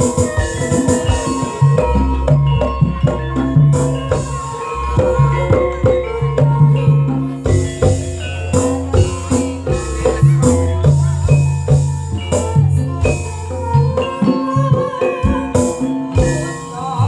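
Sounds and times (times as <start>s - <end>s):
drum and percussion strikes: 0.0s - 17.0s
low bass line: 1.6s - 14.0s.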